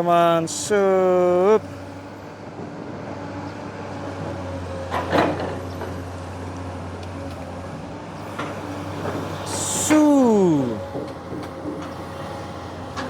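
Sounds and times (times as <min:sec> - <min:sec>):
diesel engine hum: 0:09.4 - 0:10.9.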